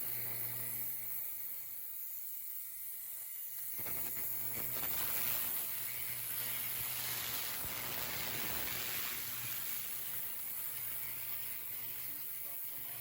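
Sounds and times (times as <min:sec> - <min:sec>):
spraying hiss: 0:04.6 - 0:13.0.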